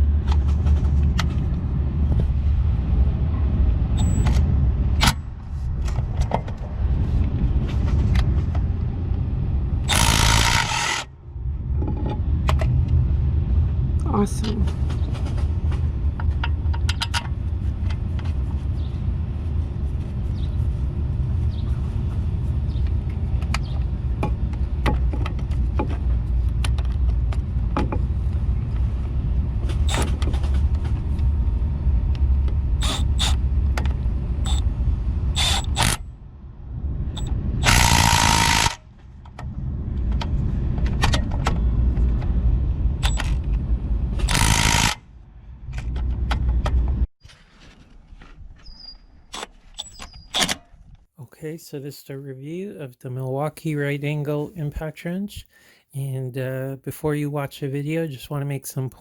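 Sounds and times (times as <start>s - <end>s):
low engine rumble: 0.0s - 48.7s
impact wrench running: 9.9s - 11.1s, 32.8s - 33.4s, 34.4s - 34.6s, 35.4s - 36.0s, 37.6s - 38.8s, 44.2s - 45.0s.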